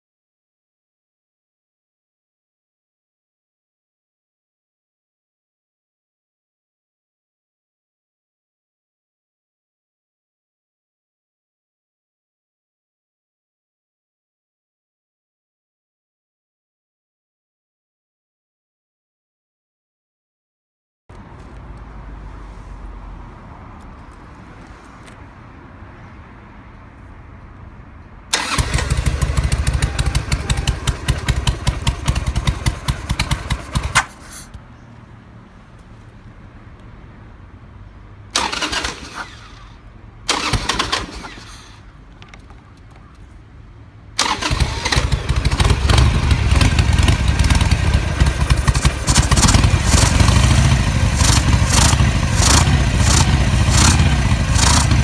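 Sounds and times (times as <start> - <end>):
engine backfire pop: 28.3 - 34.6, 44.2 - 55.0
motorcycle engine starting: 28.3 - 34.8, 38.3 - 43.2, 44.2 - 55.0.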